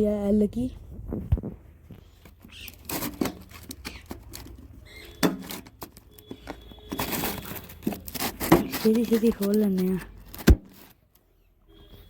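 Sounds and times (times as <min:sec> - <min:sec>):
packaging and metal parts handled: 0:02.0 - 0:11.2.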